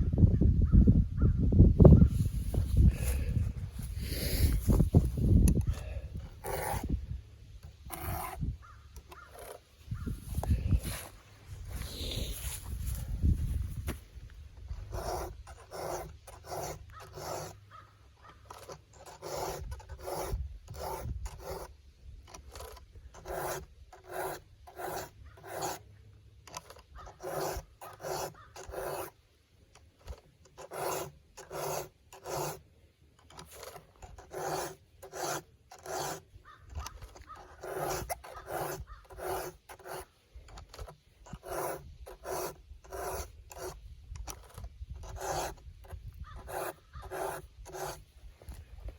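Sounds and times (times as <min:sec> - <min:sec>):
file rasping on chainsaw chain: 0:04.0 - 0:07.0, 0:07.6 - 0:11.1, 0:14.7 - 0:25.9, 0:26.5 - 0:29.2, 0:29.8 - 0:48.1.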